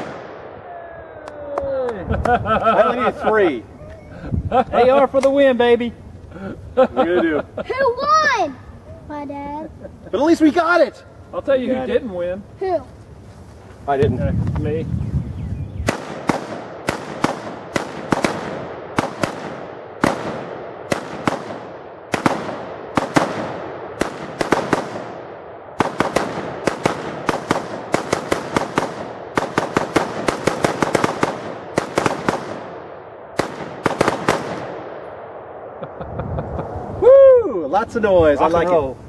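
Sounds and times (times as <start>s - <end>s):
rifle gunshots echoing: 0.0s - 0.7s, 15.8s - 35.8s.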